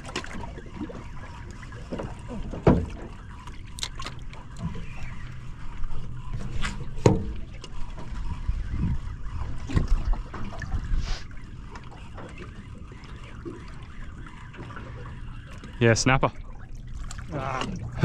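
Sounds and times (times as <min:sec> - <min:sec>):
water and wind rushing around hull: 0:00.0 - 0:18.0
sharp knocks on boat: 0:01.9 - 0:03.1, 0:06.6 - 0:08.1.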